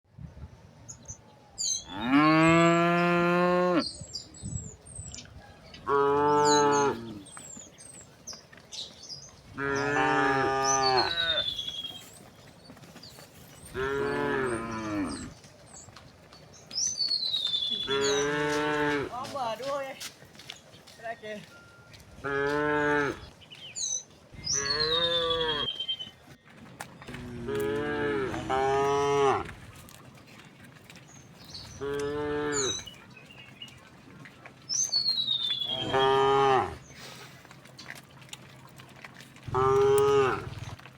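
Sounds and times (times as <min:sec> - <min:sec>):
cows mooing: 0:01.8 - 0:04.0, 0:05.8 - 0:07.4, 0:09.5 - 0:11.9, 0:13.7 - 0:15.4, 0:17.7 - 0:19.2, 0:22.2 - 0:23.3, 0:24.4 - 0:25.8, 0:27.1 - 0:29.6, 0:31.7 - 0:32.8, 0:35.6 - 0:36.9, 0:39.4 - 0:40.8.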